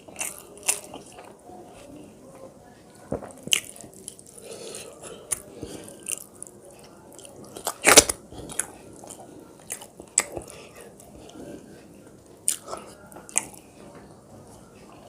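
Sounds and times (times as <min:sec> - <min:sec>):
person chewing: 0:00.0 - 0:01.3, 0:03.4 - 0:11.7, 0:12.4 - 0:13.7.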